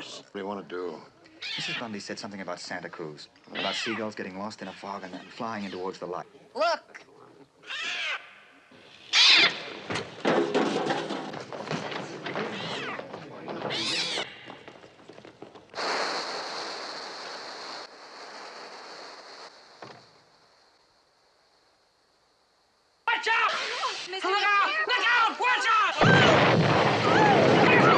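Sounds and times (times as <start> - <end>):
hissing rush of noise: 15.7 - 24.3.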